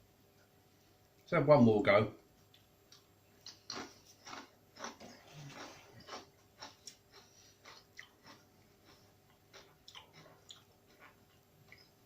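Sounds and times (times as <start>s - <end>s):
person chewing crunchy chip: 3.4s - 12.0s.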